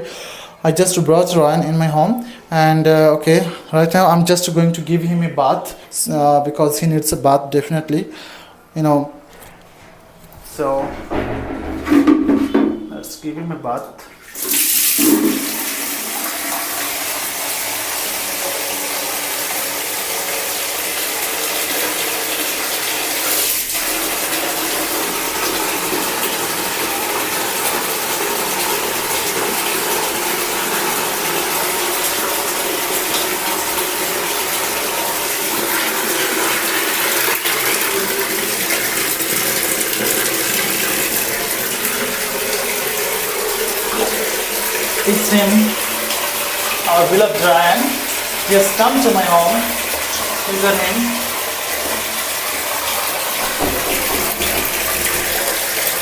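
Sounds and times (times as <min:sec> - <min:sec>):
knock: 0:10.8 - 0:12.9, 0:53.4 - 0:55.4
water running from a tap: 0:14.2 - 0:56.0.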